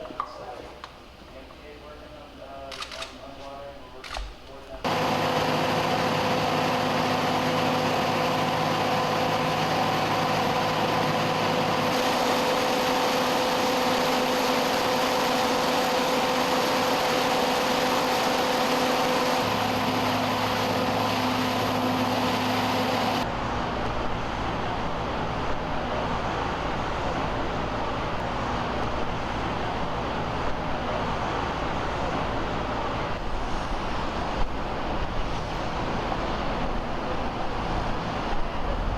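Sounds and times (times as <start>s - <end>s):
rough noisy rumble: 4.4s - 38.9s
pumps running with machine hum: 4.8s - 23.4s.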